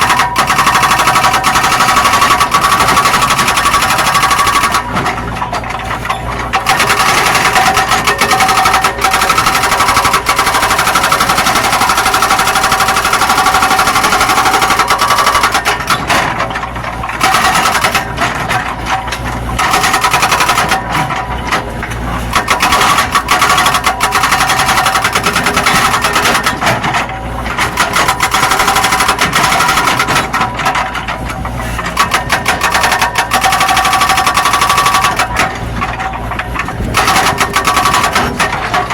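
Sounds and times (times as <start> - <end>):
excavator diesel engine: 0.0 - 38.9
rapid steady clatter: 0.0 - 38.9.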